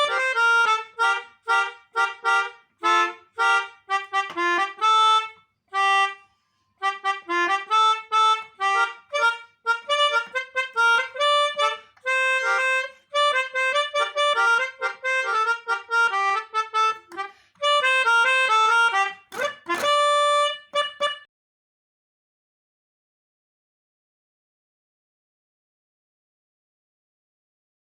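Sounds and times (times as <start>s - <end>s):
melodica tune: 0.0s - 21.3s.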